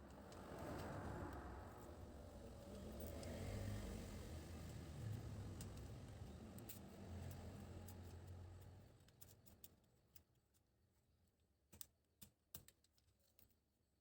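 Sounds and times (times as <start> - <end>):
clicks and taps of small parts: 5.4 - 10.7, 11.6 - 13.6.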